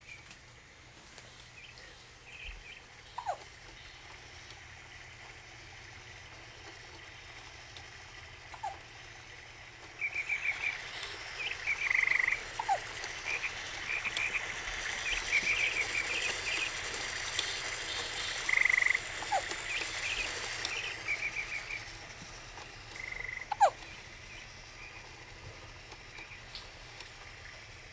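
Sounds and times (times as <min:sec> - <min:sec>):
high-pitched chirping trills: 0:01.6 - 0:05.7, 0:08.4 - 0:27.9.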